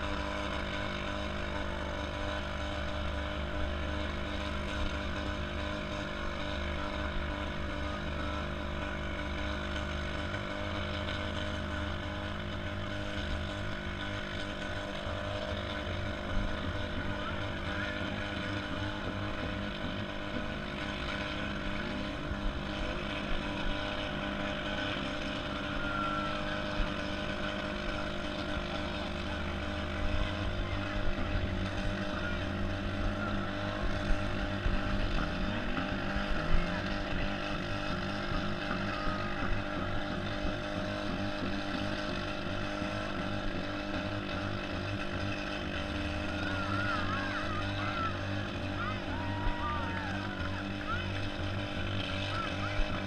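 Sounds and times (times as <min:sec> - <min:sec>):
car engines running: 0:00.0 - 0:53.0.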